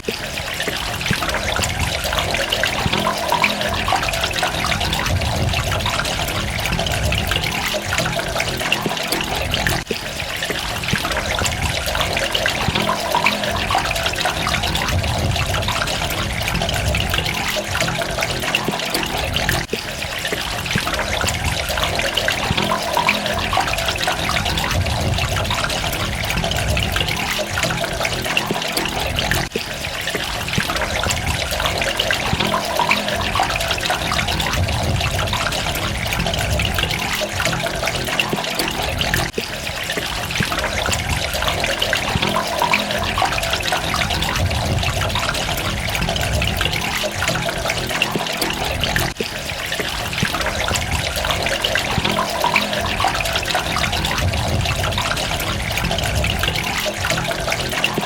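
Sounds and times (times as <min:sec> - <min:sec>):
droplets pattering: 0:00.0 - 0:58.0
water running and trickling: 0:00.0 - 0:58.0.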